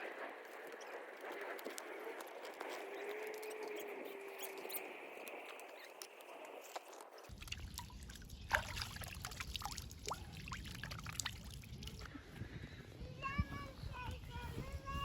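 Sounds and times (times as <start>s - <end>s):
water trickling and dripping: 5.2s - 12.1s
small water splashes: 6.6s - 12.1s.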